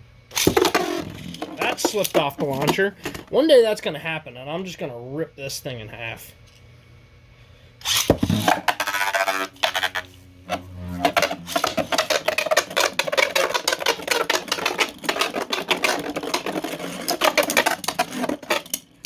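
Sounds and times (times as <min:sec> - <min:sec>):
spinning tops whirring: 0:00.3 - 0:03.3, 0:07.8 - 0:19.0
launcher rip: 0:07.8 - 0:09.5
spinning tops clattering: 0:07.8 - 0:10.1, 0:11.0 - 0:19.0.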